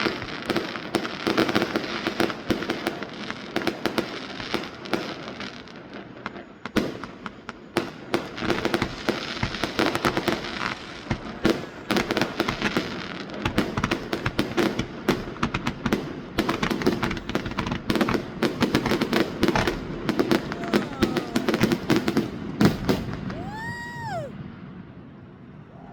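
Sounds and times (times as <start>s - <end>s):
fireworks bangs and crackles: 0.0s - 25.5s.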